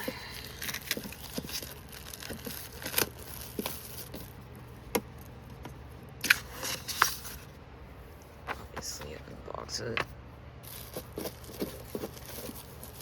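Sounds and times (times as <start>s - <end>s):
packaging crinkling: 0.1s - 4.5s, 10.6s - 13.0s.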